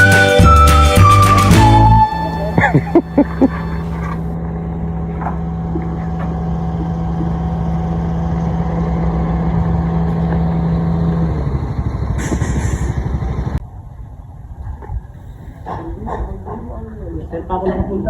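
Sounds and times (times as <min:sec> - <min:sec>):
engine running: 0:01.9 - 0:13.7.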